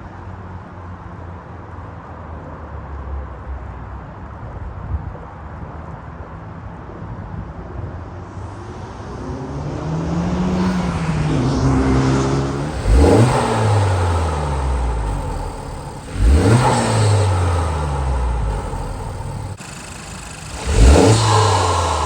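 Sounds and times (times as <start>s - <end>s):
car engine revving: 9.2s - 22.0s.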